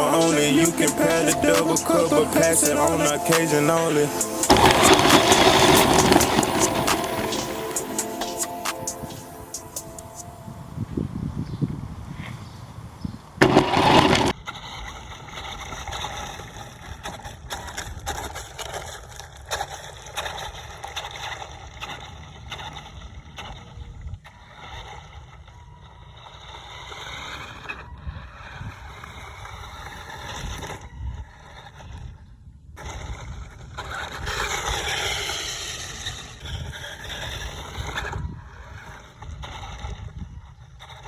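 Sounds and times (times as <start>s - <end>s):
wheels scraping on ground: 0.0s - 41.0s
toy car electric motor whining: 14.0s - 41.0s.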